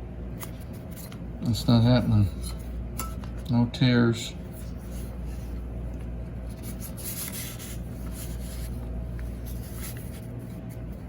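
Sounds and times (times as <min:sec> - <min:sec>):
steady low hum: 0:00.0 - 0:11.0
rubbing and rustling of handling: 0:04.4 - 0:11.0.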